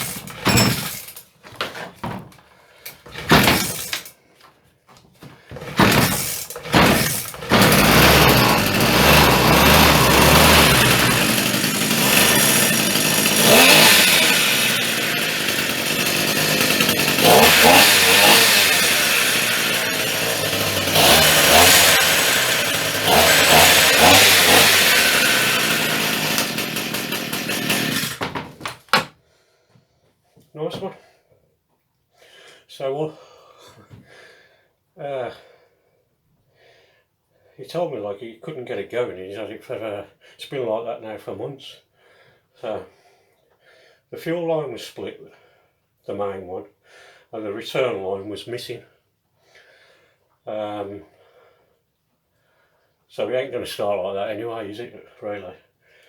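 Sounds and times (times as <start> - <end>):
strimmer engine starting and revving: 0.0 - 1.2, 3.1 - 4.1, 5.6 - 28.3.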